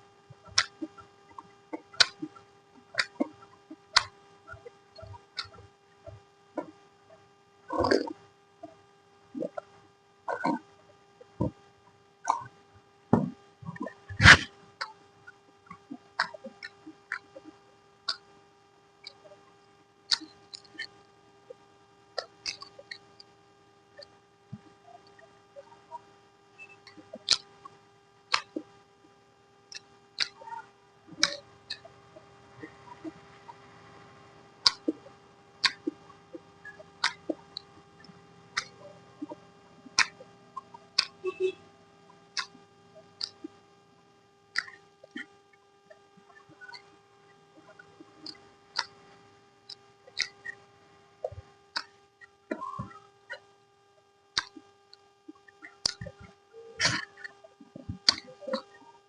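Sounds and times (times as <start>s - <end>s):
faint electrical hum: 0.0s - 59.0s
mouth sounds of eating: 7.7s - 9.7s, 10.3s - 11.6s, 12.2s - 12.6s, 29.7s - 43.6s, 55.3s - 59.0s
wet mouth clicks from chewing: 50.1s - 50.6s, 54.4s - 54.6s.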